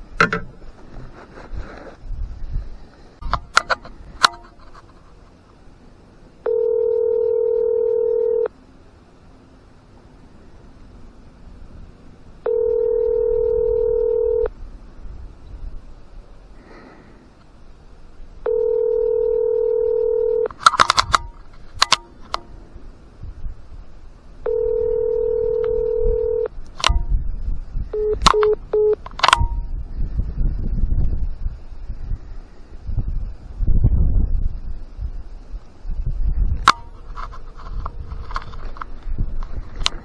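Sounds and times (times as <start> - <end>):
telephone ringback tone: 6.4 - 8.5, 12.4 - 14.5, 18.4 - 20.5, 24.4 - 26.5, 28.0 - 29.0
sharp clicks: 20.5 - 22.5, 26.6 - 27.1, 28.1 - 29.6.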